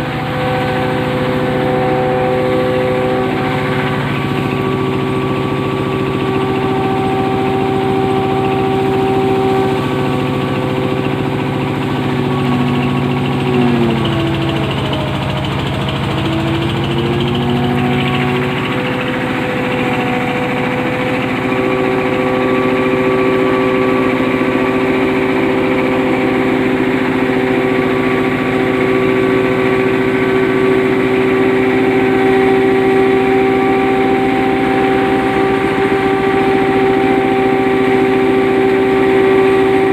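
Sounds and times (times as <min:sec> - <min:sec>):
hammer mill humming: 0:00.0 - 0:39.9.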